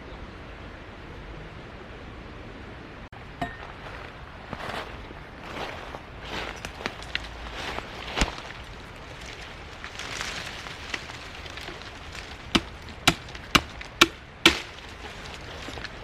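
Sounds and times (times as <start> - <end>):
chopping strikes: 10.9 - 15.9.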